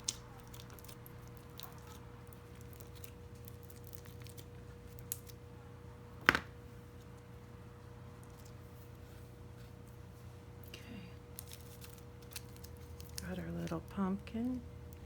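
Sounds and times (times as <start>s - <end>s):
slime clicks and crackles: 0.0s - 5.4s, 11.3s - 13.9s
low background hum: 0.0s - 15.0s.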